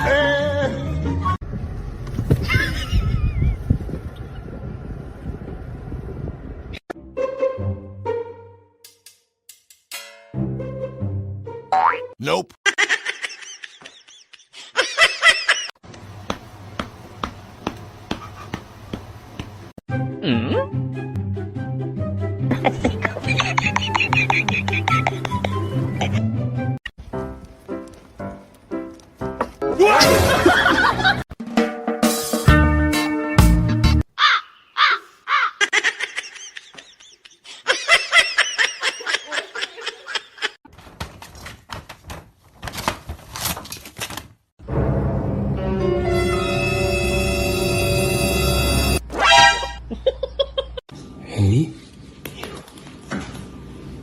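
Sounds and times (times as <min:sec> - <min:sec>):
high repeated animal calls: 0:34.1 - 0:35.7.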